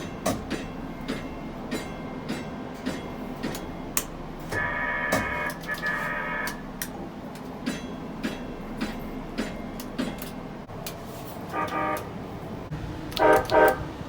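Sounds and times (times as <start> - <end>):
train horn blasts: 4.6 - 6.6, 11.5 - 12.2, 13.2 - 14.0.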